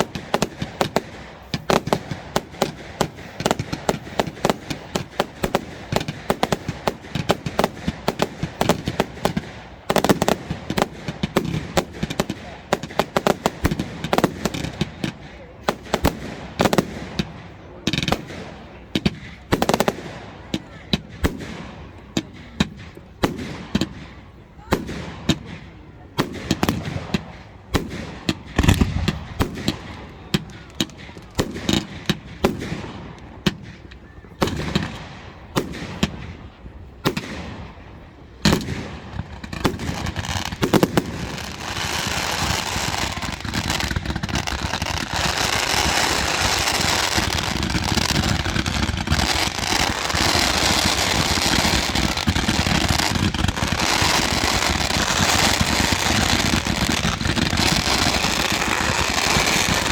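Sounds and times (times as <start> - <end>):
fireworks bangs and pops: 0.0 - 59.9
fireworks crackling: 0.0 - 59.9.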